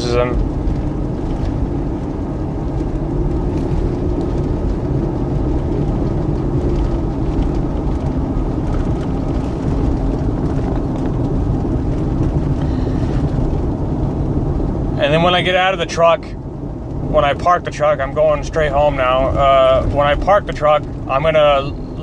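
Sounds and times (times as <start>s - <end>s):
car engine accelerating: 0.0s - 22.0s.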